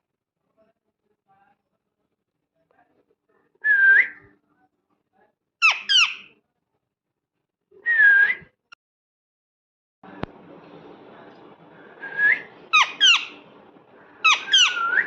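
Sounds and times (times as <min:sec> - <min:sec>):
parrot chirps: 0:05.6 - 0:06.3, 0:12.7 - 0:13.4, 0:14.2 - 0:15.0
parrot whistling: 0:12.2 - 0:13.4, 0:14.2 - 0:15.0.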